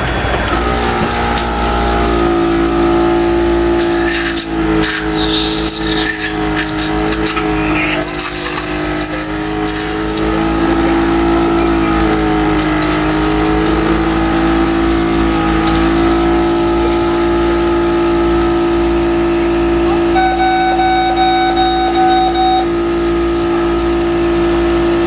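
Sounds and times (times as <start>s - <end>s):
electric motor humming: 0.0s - 25.0s
hiss: 12.8s - 16.6s.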